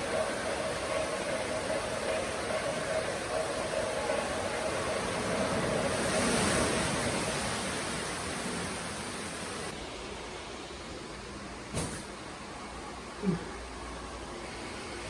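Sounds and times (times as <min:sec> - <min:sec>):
water rushing in spa pool: 0:00.0 - 0:11.0.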